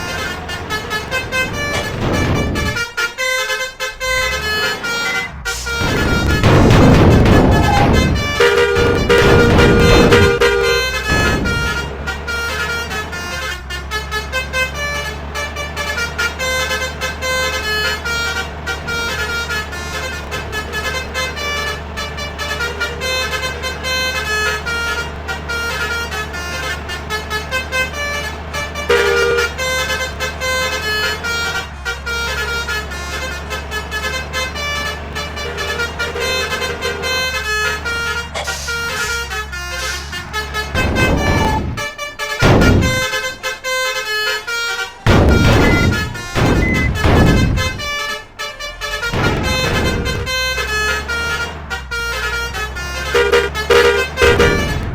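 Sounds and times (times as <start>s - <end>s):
deep horn blast: 0.0s - 54.9s
diesel bus engines humming: 0.0s - 54.9s
musical air horns tooting: 0.0s - 54.9s.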